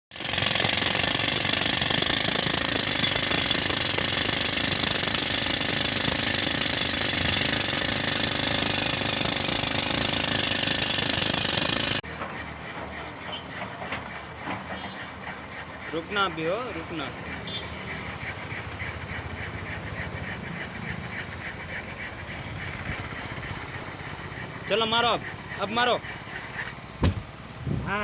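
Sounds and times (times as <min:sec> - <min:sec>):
pneumatic rock drill hammering: 0:00.1 - 0:27.5
engine running: 0:16.7 - 0:27.8.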